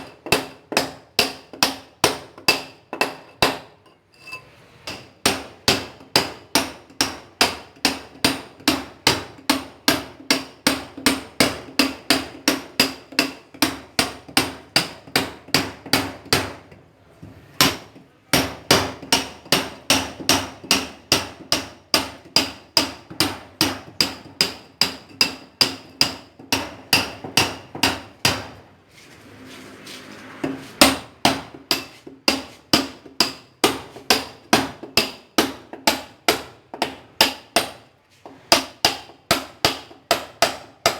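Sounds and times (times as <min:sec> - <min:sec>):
hammer striking steel chisel: 0:00.0 - 0:16.6, 0:17.6 - 0:28.5, 0:30.8 - 0:37.8, 0:38.5 - 0:40.9.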